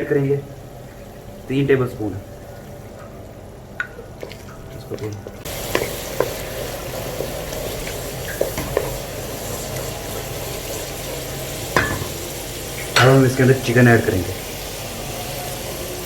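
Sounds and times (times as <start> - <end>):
food sizzling in hot oil: 3.8 - 16.0
spoon scraping a pan: 5.4 - 9.7.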